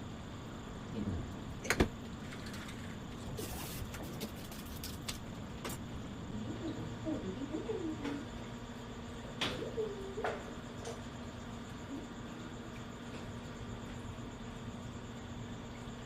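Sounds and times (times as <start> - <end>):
steady low hum: 0.0 - 16.0
bird cooing: 6.3 - 8.4, 9.2 - 10.6.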